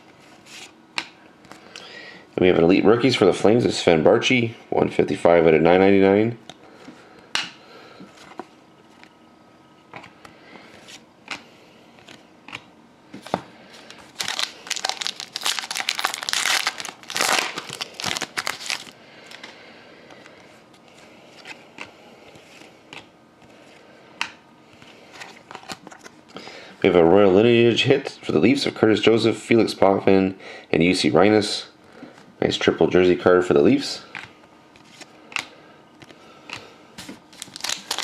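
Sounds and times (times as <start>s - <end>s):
wrapper tearing and crinkling: 14.0s - 19.0s, 37.3s - 38.0s.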